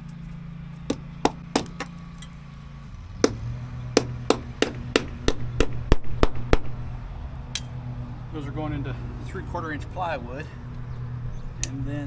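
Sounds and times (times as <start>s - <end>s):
steady low hum: 0.0s - 12.0s
hammer blows: 0.9s - 2.0s, 3.2s - 7.0s.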